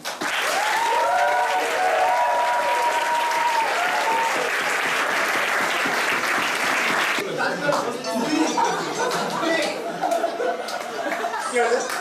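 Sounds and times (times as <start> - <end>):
audience applauding: 0.0 - 7.9, 8.9 - 12.0
voices cheering: 0.4 - 4.9.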